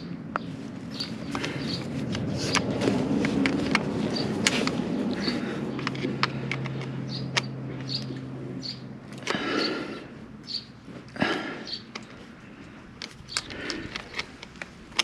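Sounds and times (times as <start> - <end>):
pliers clicking and scraping on bolt: 1.0 - 8.2, 13.0 - 15.0.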